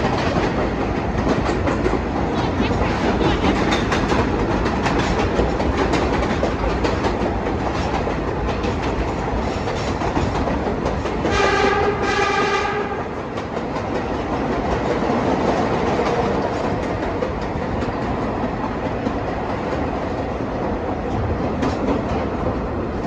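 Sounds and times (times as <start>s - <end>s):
subway train rumbling on track: 0.0s - 23.0s
train horn: 11.2s - 13.3s.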